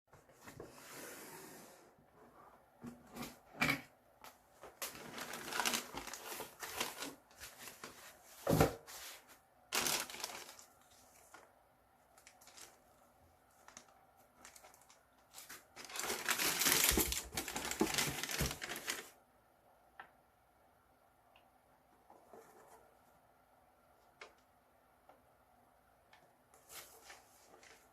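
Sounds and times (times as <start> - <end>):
faint rustling and scratchy handling: 4.5 - 19.2, 22.0 - 23.3, 26.5 - 27.9
paper crinkling: 4.7 - 8.2, 9.7 - 19.2, 26.5 - 27.9.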